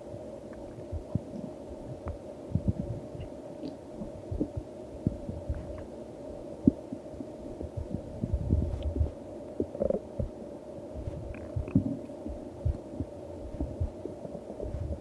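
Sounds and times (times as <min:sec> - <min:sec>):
steady low hum: 0:00.0 - 0:15.0
stomach growling: 0:07.8 - 0:10.4, 0:11.0 - 0:12.1.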